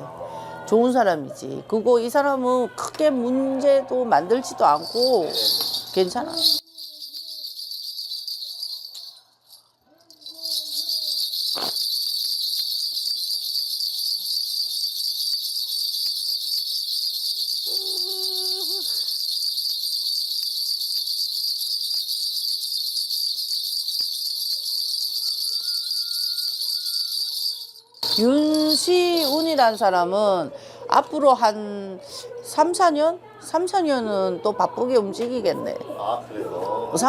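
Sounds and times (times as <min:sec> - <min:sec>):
hand bell rattle jingling: 0:04.7 - 0:30.1
person murmuring: 0:17.7 - 0:19.0.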